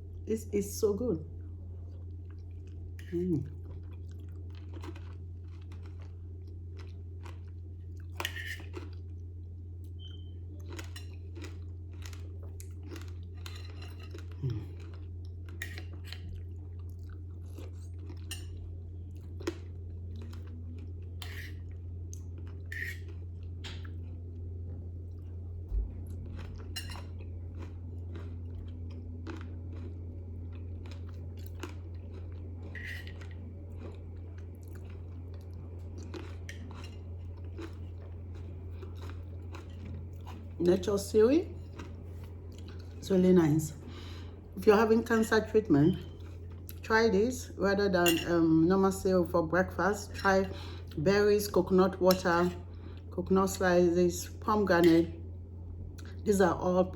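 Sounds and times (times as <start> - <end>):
steady low hum: 0.0 - 56.9
person chewing crunchy food: 1.8 - 43.0, 46.0 - 46.8.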